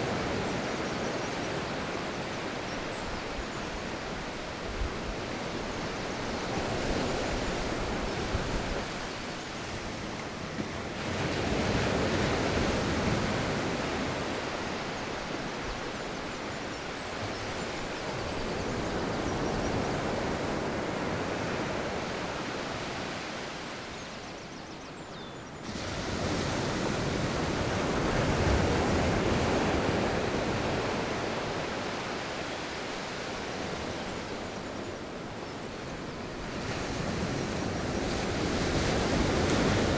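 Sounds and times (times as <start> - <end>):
wind blowing across microphone: 0.0 - 16.0.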